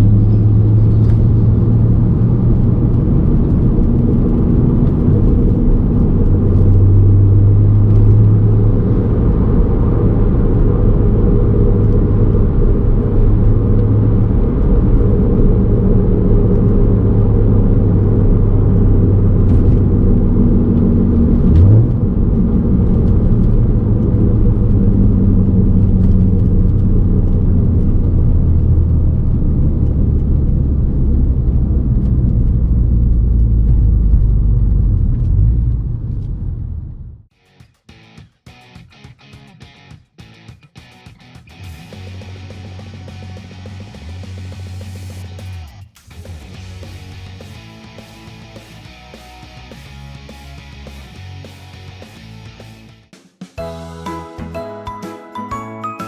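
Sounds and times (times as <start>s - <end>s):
car engine: 0.0s - 37.3s
low rumble of hub bearing: 0.0s - 37.3s
road noise: 0.0s - 37.3s, 46.4s - 53.0s.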